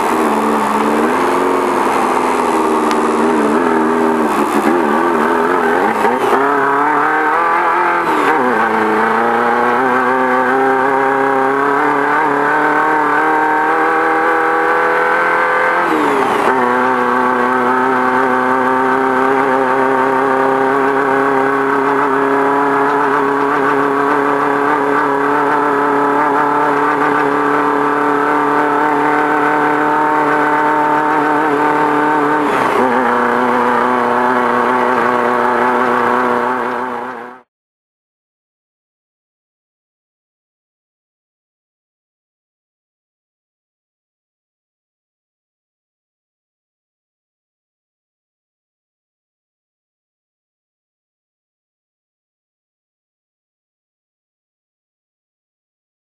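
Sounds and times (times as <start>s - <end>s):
race car engine running hard: 0.0s - 37.4s.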